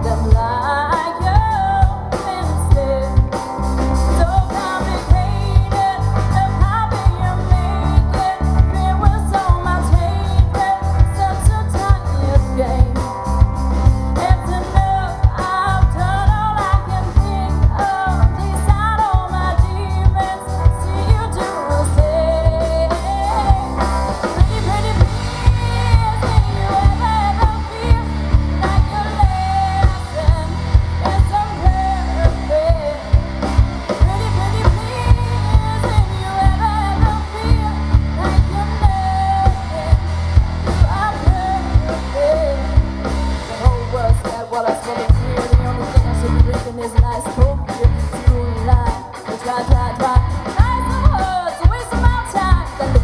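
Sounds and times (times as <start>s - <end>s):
live rock band playing: 0.0s - 53.0s
woman singing: 0.0s - 53.0s
drum beat: 21.1s - 53.0s.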